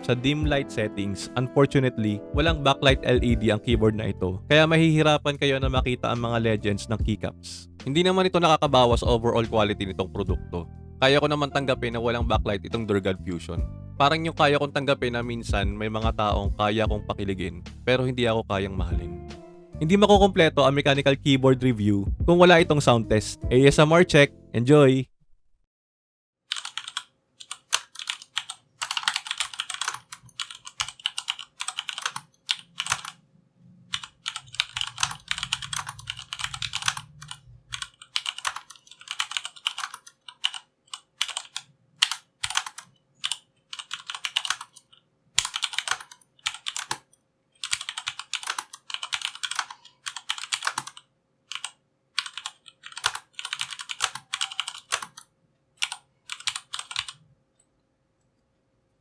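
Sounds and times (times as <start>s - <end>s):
mechanical keyboard key clacks: 47.6s - 55.2s.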